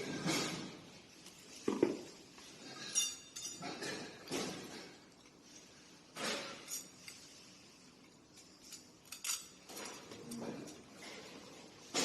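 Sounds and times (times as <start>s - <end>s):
sharp clinks and knocks: 8.0s - 10.4s.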